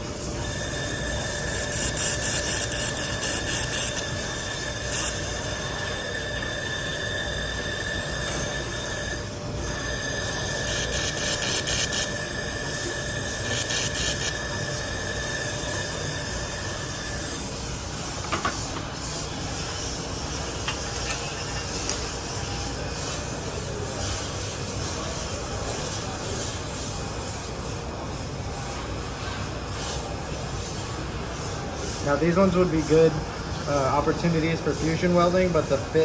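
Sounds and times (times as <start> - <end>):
thin steady tone: 0.4 - 17.5
laser welder crackling pulses: 0.5 - 15.1.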